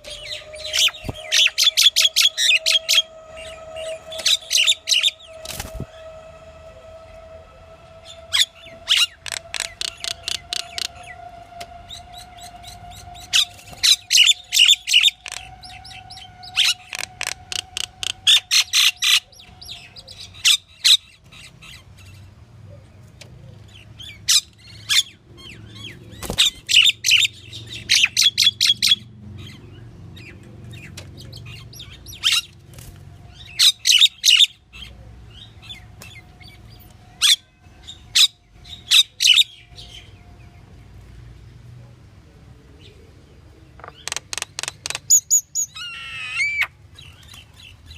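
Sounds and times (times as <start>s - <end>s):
bird chattering calls: 8.4s - 11.1s, 13.9s - 21.0s, 43.8s - 46.7s.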